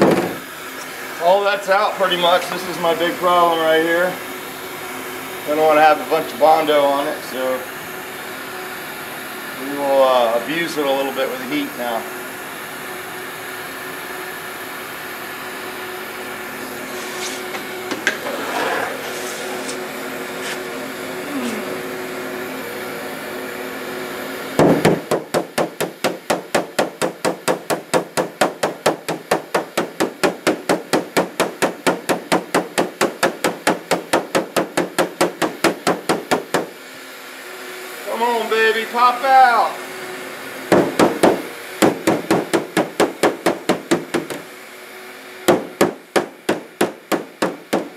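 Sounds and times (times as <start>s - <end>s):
heat gun humming: 0.0s - 47.9s
hammer tapping on metal hood: 24.6s - 36.7s, 40.7s - 44.4s, 45.5s - 47.9s.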